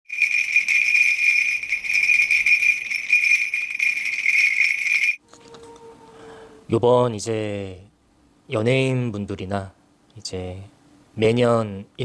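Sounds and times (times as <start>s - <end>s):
small bells jingling: 0.1s - 5.2s.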